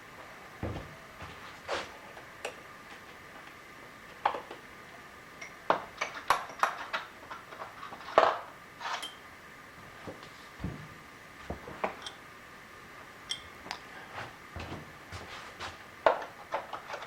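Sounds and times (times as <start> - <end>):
steel tools clinking on metal: 8.9 - 9.2.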